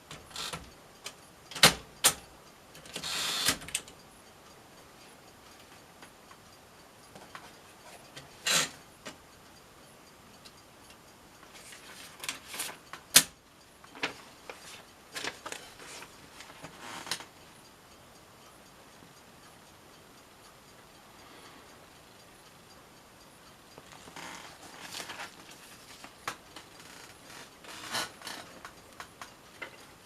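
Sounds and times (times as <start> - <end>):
manual typewriter clacking: 1.5 - 2.2, 2.8 - 3.9, 11.6 - 13.4.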